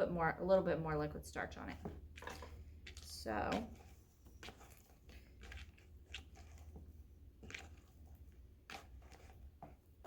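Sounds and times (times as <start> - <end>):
slime squishing and crackling: 2.1 - 10.0.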